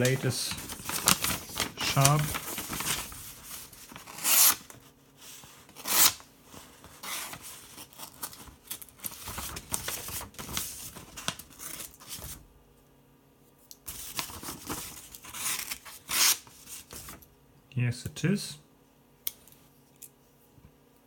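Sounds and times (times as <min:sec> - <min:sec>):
paper rustling: 0:00.0 - 0:12.4, 0:13.8 - 0:17.2
knife blade cutting paper: 0:04.0 - 0:04.7, 0:05.8 - 0:06.2, 0:15.4 - 0:16.5.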